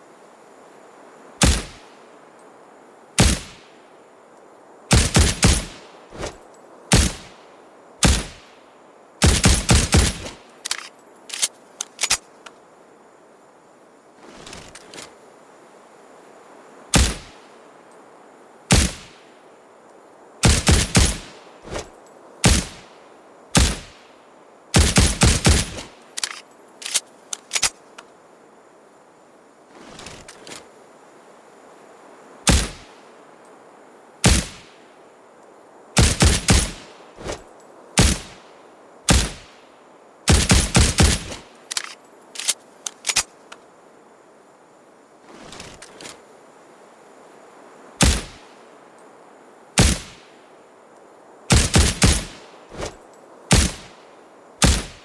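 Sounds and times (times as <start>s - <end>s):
suppressed pistol shots: 1.4s - 1.8s, 39.1s - 39.5s, 40.3s - 41.4s, 49.8s - 50.2s, 53.5s - 53.9s, 54.6s - 55.0s.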